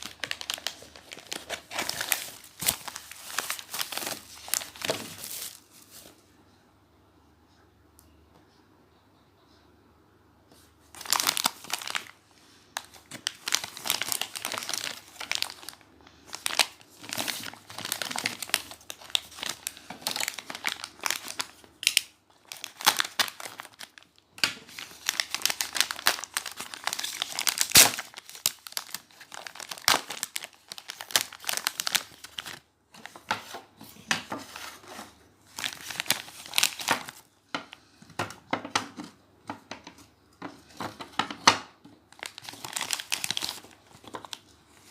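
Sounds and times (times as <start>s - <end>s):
packaging crinkling and tearing: 0.0s - 6.1s, 10.9s - 12.2s, 12.8s - 37.3s, 42.1s - 44.9s.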